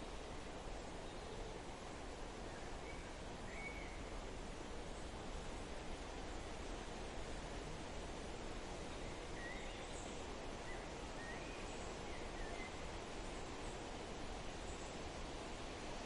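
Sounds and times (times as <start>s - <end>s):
wind through trees: 0.0s - 16.0s
faint bird chirps and whistles: 2.5s - 4.0s, 9.0s - 12.8s.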